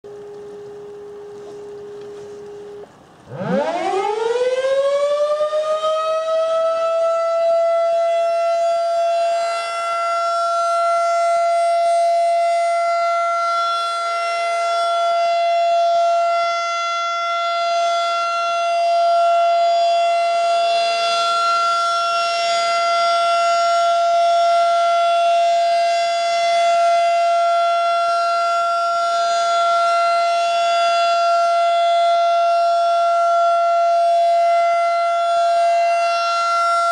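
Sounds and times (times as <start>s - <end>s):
warning siren wailing: 0.0s - 36.9s
low steady tone: 0.1s - 3.3s.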